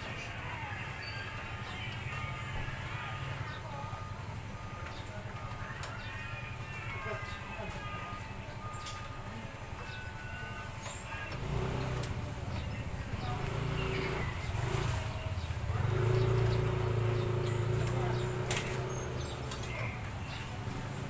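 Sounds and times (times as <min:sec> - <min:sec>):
birds chirping: 0:05.8 - 0:21.0
vehicle engine running: 0:11.0 - 0:21.0.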